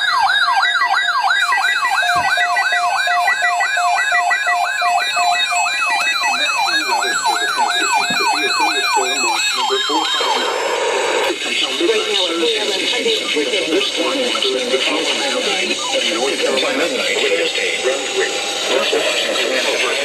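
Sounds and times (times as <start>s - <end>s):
falling siren-like sweep: 0.0s - 11.0s
steady alarm tone: 0.0s - 20.0s.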